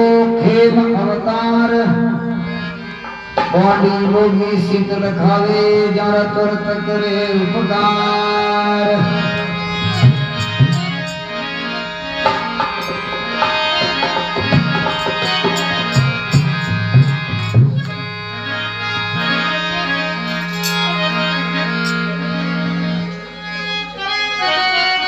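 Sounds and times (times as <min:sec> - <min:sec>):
reed instrument melody with drone: 0:02.0 - 0:25.0
hand drum strikes: 0:10.0 - 0:11.2, 0:12.3 - 0:18.0.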